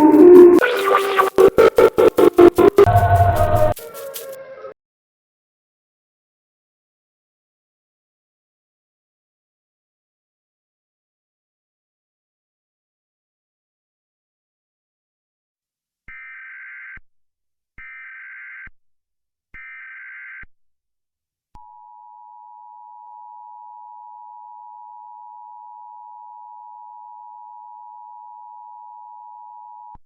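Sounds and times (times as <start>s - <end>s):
data tone bursts: 0.0s - 4.2s
two-tone attention signal: 0.0s - 4.4s.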